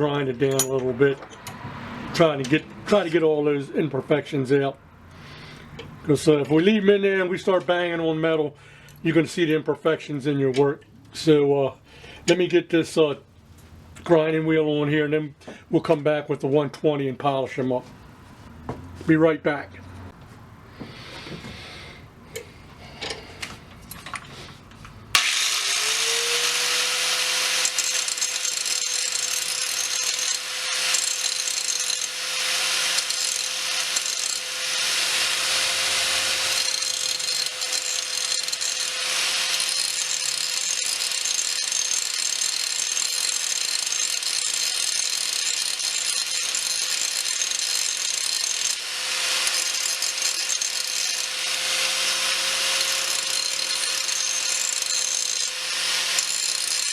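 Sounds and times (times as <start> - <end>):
angle grinder grinding steel: 24.2 - 56.9.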